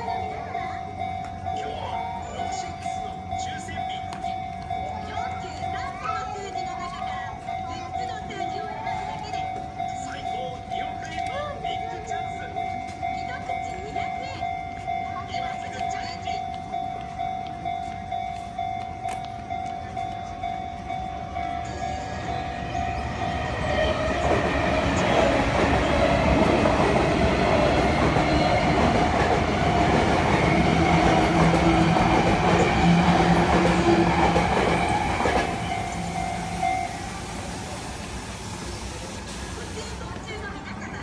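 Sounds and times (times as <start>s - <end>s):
electric train passing: 0.0s - 41.0s
railway crossing bell ringing: 0.0s - 41.0s.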